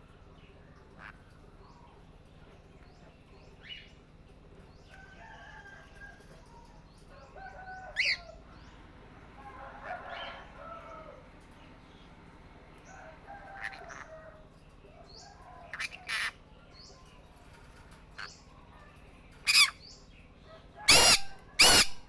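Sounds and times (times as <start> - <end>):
birds chirping and squawking: 0.2 - 12.2, 12.8 - 22.0
loud rising bird call: 20.8 - 22.0.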